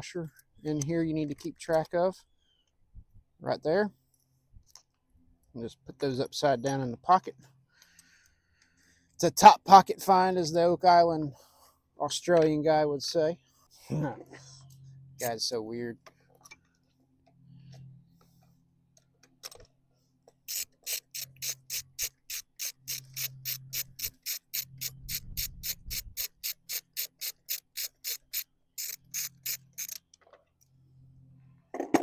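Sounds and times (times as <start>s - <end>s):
socket ratchet clicking: 20.5s - 30.2s.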